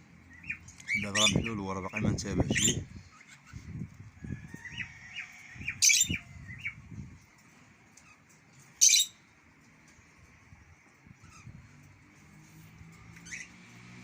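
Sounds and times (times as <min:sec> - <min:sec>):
bird chirping: 0:00.2 - 0:03.8, 0:07.9 - 0:09.3, 0:12.8 - 0:13.9
harsh bird squawks: 0:00.4 - 0:03.7, 0:04.7 - 0:06.8, 0:08.8 - 0:09.2, 0:13.2 - 0:13.6.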